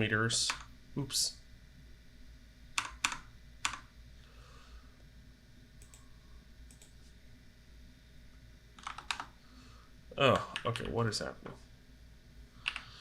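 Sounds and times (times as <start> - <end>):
computer clicks: 0.5 - 0.7, 2.8 - 3.9, 5.8 - 6.1, 6.7 - 7.0, 8.8 - 9.3, 12.7 - 12.9.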